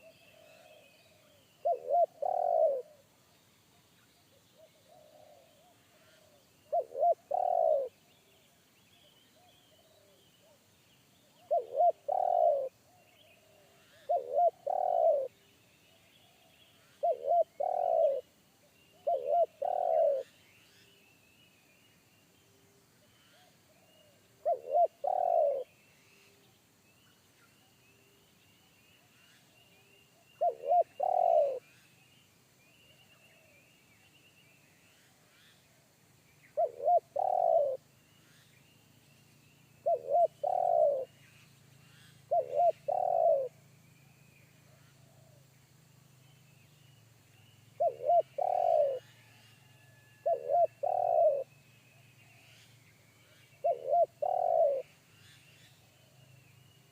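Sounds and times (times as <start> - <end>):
dove cooing: 0.0 - 3.0, 4.6 - 8.0, 11.4 - 12.8, 13.8 - 15.4, 16.9 - 18.3, 18.9 - 20.4, 23.3 - 25.7, 30.4 - 31.7, 36.6 - 37.8, 39.8 - 41.1, 42.0 - 43.6, 47.8 - 49.4, 50.2 - 51.5, 53.4 - 54.9.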